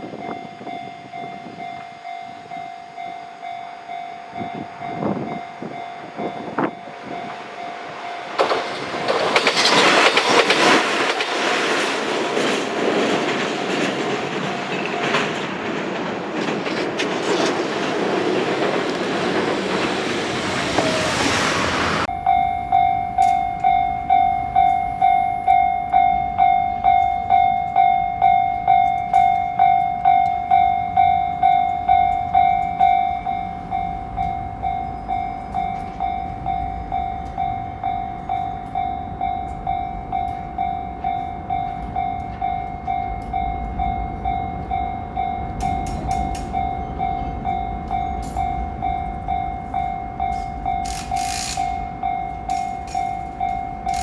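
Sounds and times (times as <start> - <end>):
level-crossing warning bell ringing: 0.0 - 54.0
train rumbling past: 0.0 - 54.0.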